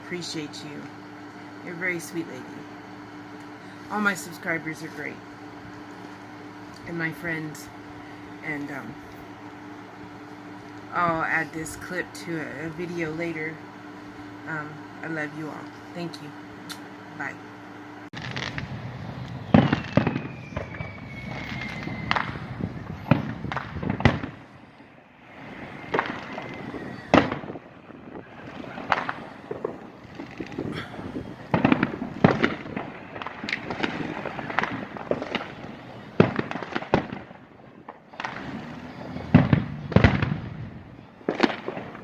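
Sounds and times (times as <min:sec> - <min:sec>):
firework falling whistle: 0:18.2 - 0:24.4, 0:25.3 - 0:37.3
fireworks bangs and crackles: 0:18.2 - 0:24.6, 0:25.2 - 0:42.0.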